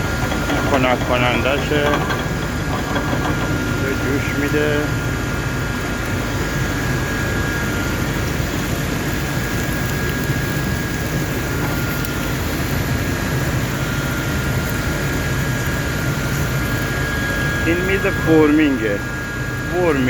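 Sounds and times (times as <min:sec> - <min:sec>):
steady high machine tone: 0:00.0 - 0:08.2, 0:16.8 - 0:20.0
production line machinery noise: 0:00.0 - 0:09.1, 0:10.2 - 0:20.0.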